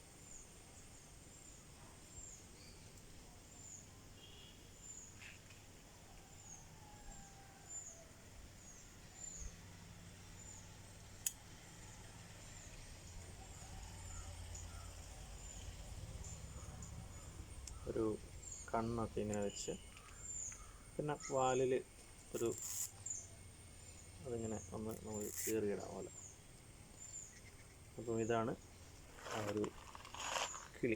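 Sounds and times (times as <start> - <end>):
small bird chirping: 8.6 - 30.9.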